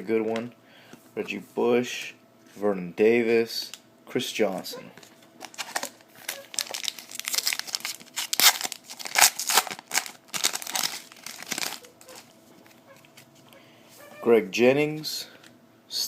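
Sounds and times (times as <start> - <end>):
foil wrapper tearing and crinkling: 5.4 - 12.3.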